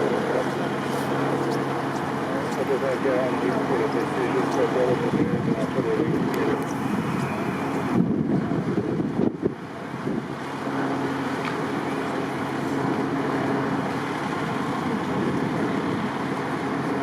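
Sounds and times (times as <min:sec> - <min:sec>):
idling vehicle engines hum: 0:00.0 - 0:17.0
wind buffeting microphone: 0:00.0 - 0:17.0.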